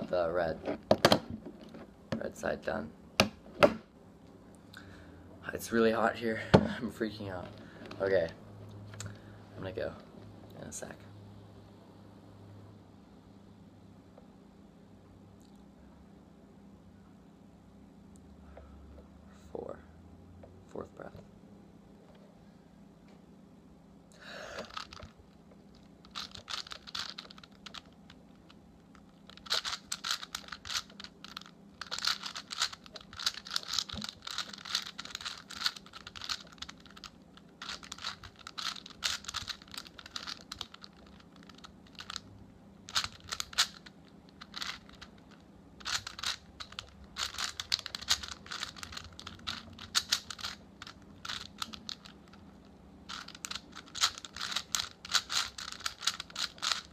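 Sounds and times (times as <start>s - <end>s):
plastic puzzle cube clicking: 24.6s - 25.0s, 26.1s - 27.9s, 29.3s - 42.2s, 42.9s - 52.4s, 53.1s - 56.9s.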